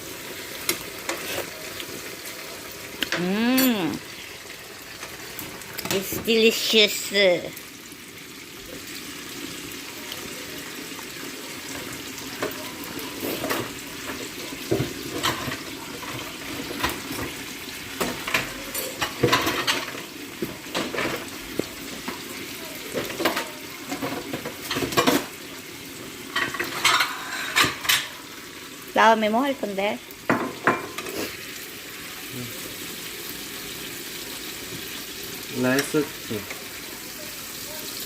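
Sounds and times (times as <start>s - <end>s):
pork sizzling in pan: 0.0s - 38.0s
utensil scraping pan: 0.7s - 1.6s, 26.4s - 28.1s.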